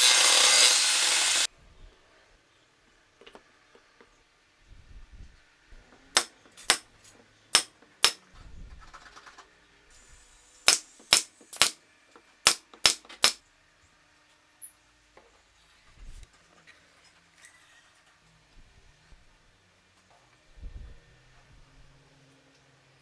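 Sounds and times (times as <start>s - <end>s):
nails hammered into wood: 6.2s - 6.9s, 7.6s - 8.2s, 10.7s - 11.8s, 12.4s - 13.4s.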